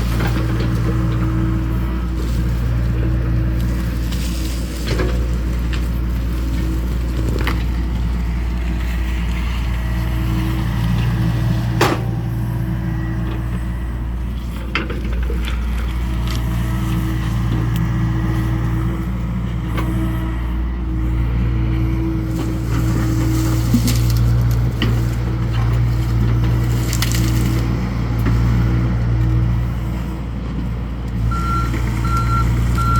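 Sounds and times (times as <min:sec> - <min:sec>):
excavator diesel engine running: 0:00.0 - 0:32.9
loud metal clank: 0:11.8 - 0:12.3
material cracking and crunching: 0:23.0 - 0:27.7.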